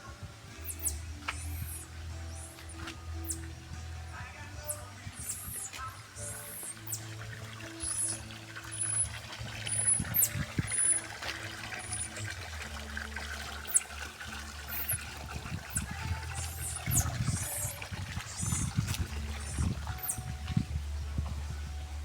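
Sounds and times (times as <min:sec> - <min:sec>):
water trickling and splashing: 0:00.0 - 0:22.0.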